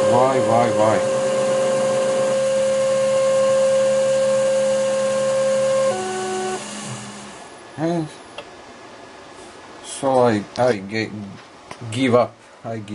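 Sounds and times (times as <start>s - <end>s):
lathe motor whine: 0.0s - 7.5s.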